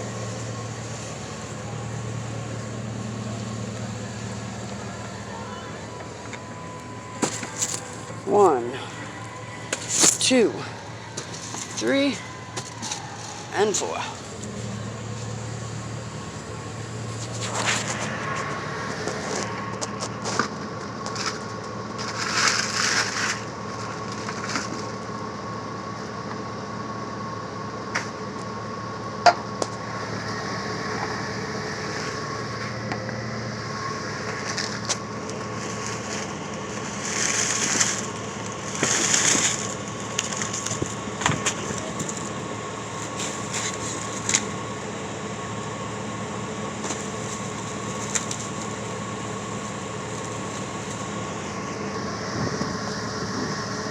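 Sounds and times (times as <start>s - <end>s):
mechanical hum: 0.0s - 53.9s
bags and packaging rustling: 6.5s - 15.4s.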